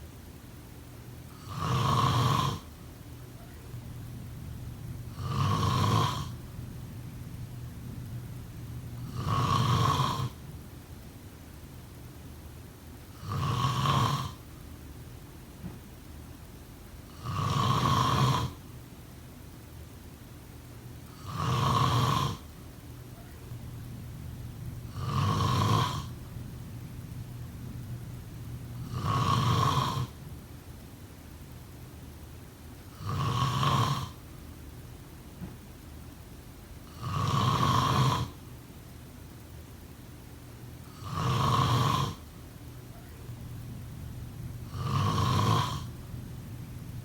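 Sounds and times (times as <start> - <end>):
person snoring: 1.3 - 2.7, 5.0 - 6.4, 8.9 - 10.4, 13.2 - 14.4, 17.1 - 18.6, 21.2 - 22.5, 24.8 - 26.2, 28.8 - 30.2, 32.9 - 34.2, 36.8 - 38.4, 40.9 - 42.2, 44.6 - 46.1.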